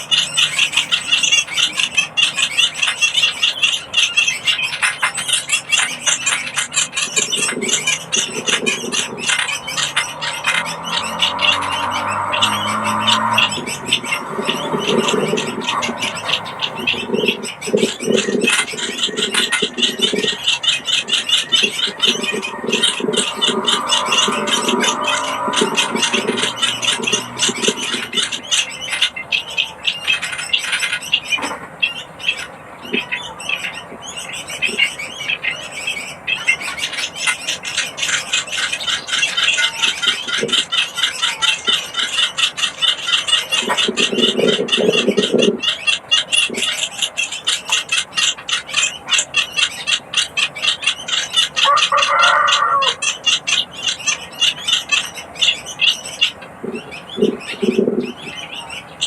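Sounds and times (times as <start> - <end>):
chicks begging calls: 0.0 - 59.0
low-pitched sounds: 8.0 - 28.6.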